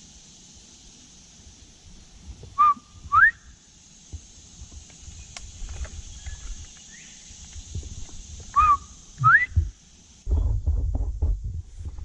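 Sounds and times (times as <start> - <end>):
bird two-note whistle: 2.6 - 3.5, 8.6 - 9.6
low rumbling noise: 9.2 - 12.0.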